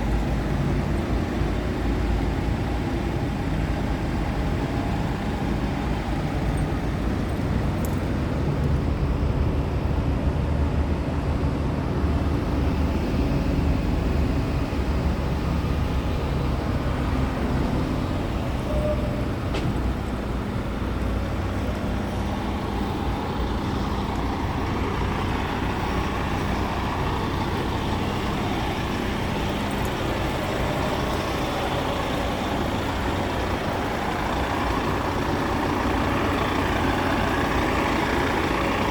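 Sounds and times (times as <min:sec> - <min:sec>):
truck engine running: 0:00.0 - 0:38.9.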